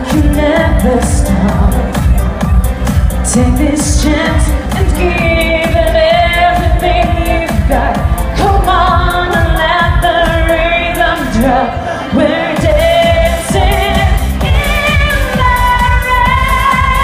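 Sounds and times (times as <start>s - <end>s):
woman singing: 0.0s - 17.0s
steady drum beat: 12.6s - 17.0s.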